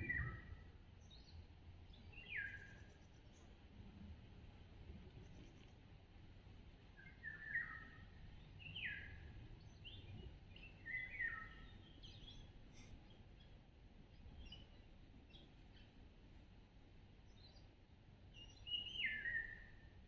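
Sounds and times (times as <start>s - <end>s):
faint low rumble: 0.0s - 2.2s
songbirds chirping: 0.0s - 3.7s, 4.4s - 20.0s.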